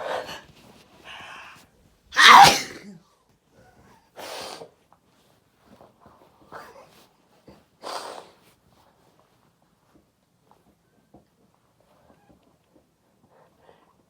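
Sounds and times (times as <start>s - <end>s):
person sneezing: 2.2s - 3.0s.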